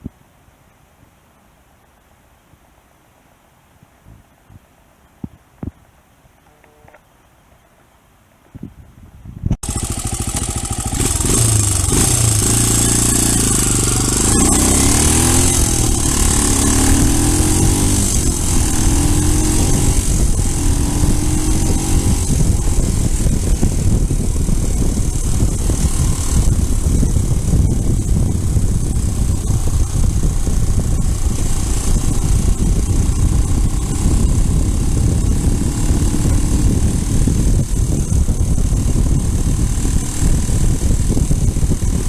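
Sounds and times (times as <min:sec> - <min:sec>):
wind and road rumble: 0:03.8 - 0:42.0
motorcycle engine accelerating: 0:09.6 - 0:42.0.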